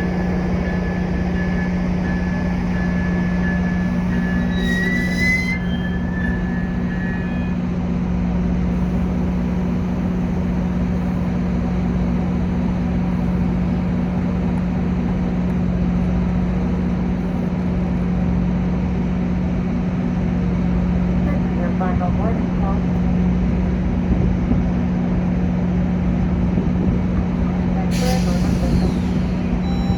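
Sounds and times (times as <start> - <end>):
high metallic squeal: 0.0 - 7.8, 27.9 - 29.9
diesel train low drone: 0.0 - 29.9.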